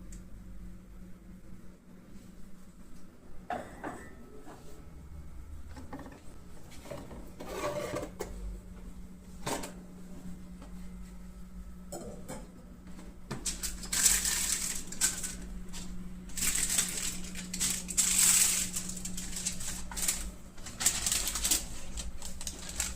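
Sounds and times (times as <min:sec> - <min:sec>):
paper and plastic crinkling: 0:13.3 - 0:22.9.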